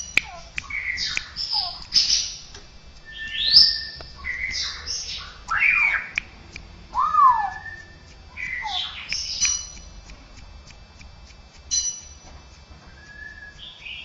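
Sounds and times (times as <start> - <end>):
bird whistling: 0.0 - 6.2, 7.0 - 9.8, 12.9 - 14.0
harsh bird calls: 0.0 - 6.2, 7.0 - 9.7.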